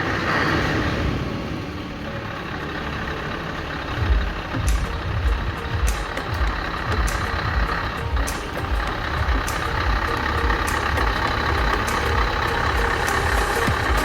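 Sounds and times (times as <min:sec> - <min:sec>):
diesel truck engine rumbling: 0:00.0 - 0:14.0.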